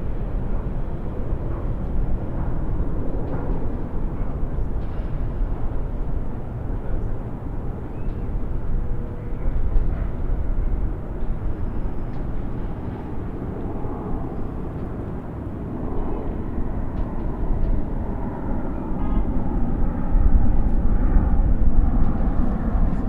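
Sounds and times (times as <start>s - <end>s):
distant highway traffic: 0.0s - 23.0s.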